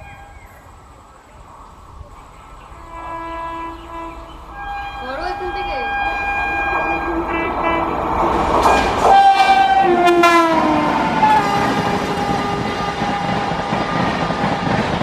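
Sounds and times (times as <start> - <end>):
train coaches rushing and rattling: 0.0 - 15.0
train horn blowing: 2.7 - 14.2.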